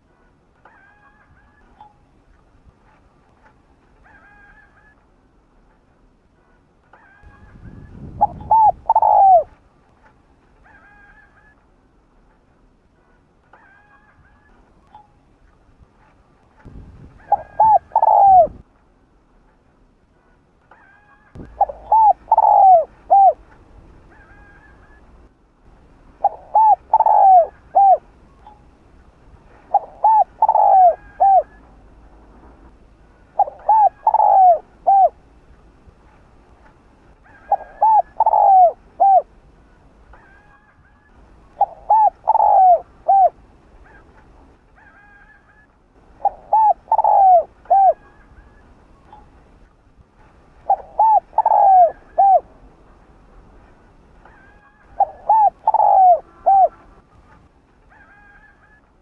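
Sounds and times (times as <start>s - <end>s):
dove cooing: 7.0s - 9.6s, 17.1s - 18.6s, 21.3s - 25.1s, 26.2s - 28.6s, 29.5s - 31.8s, 33.2s - 35.2s, 37.2s - 39.3s, 40.1s - 44.1s, 44.8s - 49.3s, 50.6s - 52.5s, 54.2s - 57.2s.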